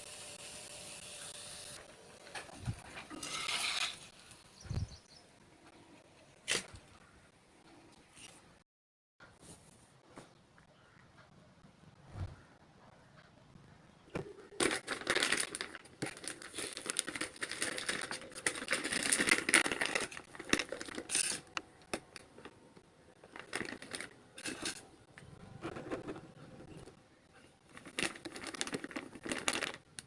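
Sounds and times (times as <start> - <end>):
packaging crinkling and clicking: 14.6 - 26.2, 27.7 - 30.0.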